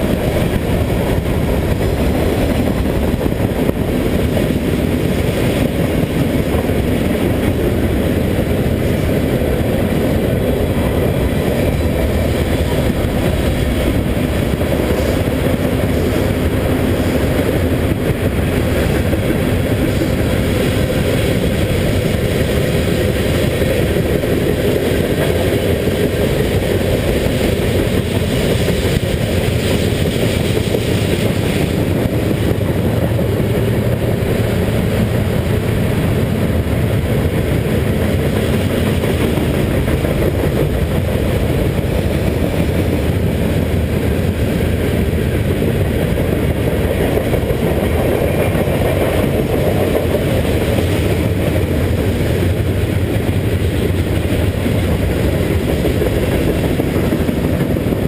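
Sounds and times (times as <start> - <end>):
wind rumble on microphone: 0.0 - 58.0.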